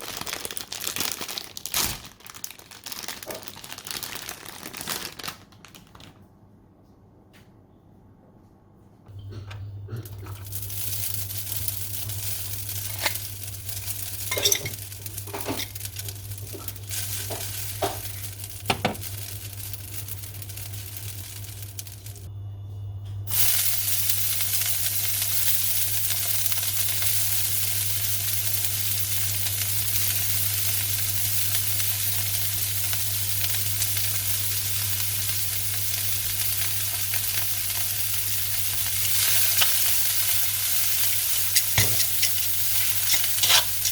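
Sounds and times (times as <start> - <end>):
food sizzling in a pan: 10.2 - 22.3, 23.3 - 43.9
utensil stirring and scraping: 41.4 - 43.9.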